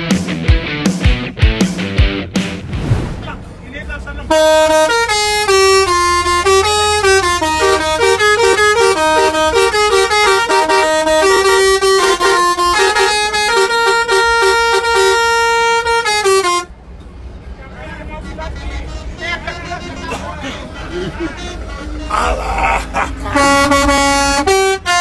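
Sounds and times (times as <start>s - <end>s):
musical bus air horn: 4.3s - 16.7s, 18.1s - 25.0s.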